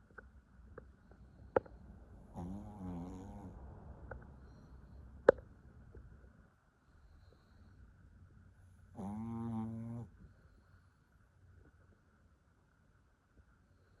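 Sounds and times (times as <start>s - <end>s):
dog snoring: 2.3s - 3.6s, 8.9s - 10.3s.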